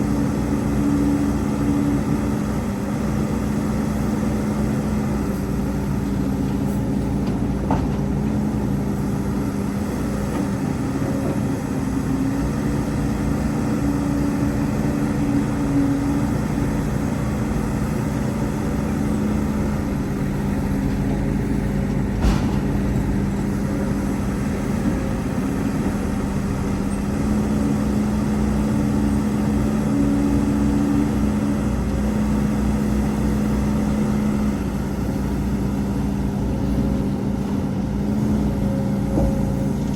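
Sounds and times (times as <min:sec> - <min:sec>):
excavator diesel engine running: 0:00.0 - 0:39.9
brief knocks: 0:22.2 - 0:23.5.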